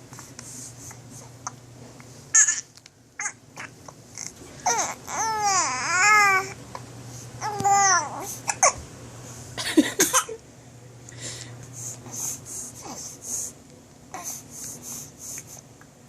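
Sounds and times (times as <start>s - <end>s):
baby fussing: 3.2s - 6.5s, 7.4s - 8.8s.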